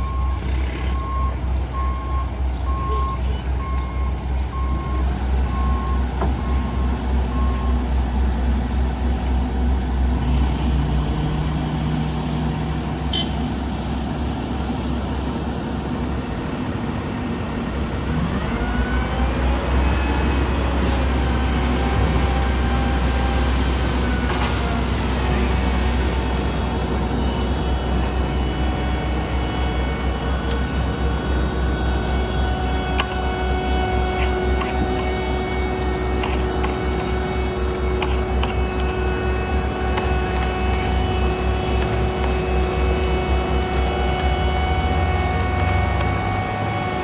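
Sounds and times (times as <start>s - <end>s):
reversing alarm beeping: 0.0s - 8.2s, 18.6s - 47.0s
diesel machinery engine rumble: 0.0s - 47.0s
high machine whine: 17.8s - 47.0s.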